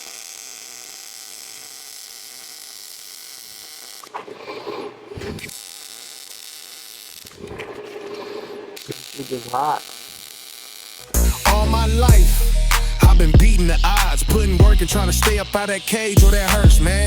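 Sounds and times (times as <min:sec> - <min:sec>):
small motor whirring: 0:00.0 - 0:11.2.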